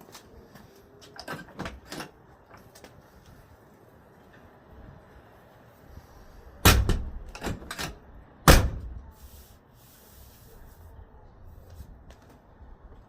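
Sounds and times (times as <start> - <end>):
truck door slamming: 6.6 - 7.7, 8.4 - 8.9.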